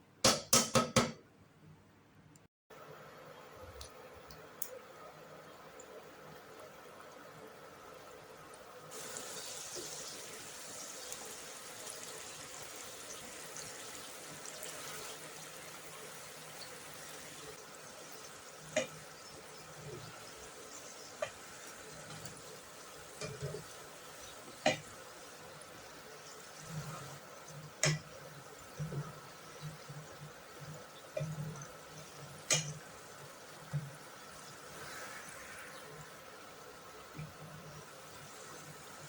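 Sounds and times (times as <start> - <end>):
potatoes sizzling in hot oil: 4.3 - 39.0
utensil clicking against pan: 27.8 - 28.1, 32.5 - 32.8.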